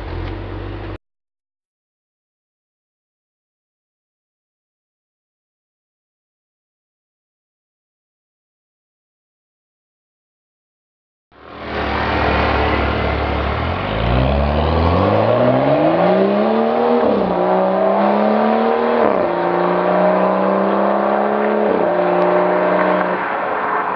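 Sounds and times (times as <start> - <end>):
car engine accelerating: 0.0 - 1.0, 11.4 - 23.9.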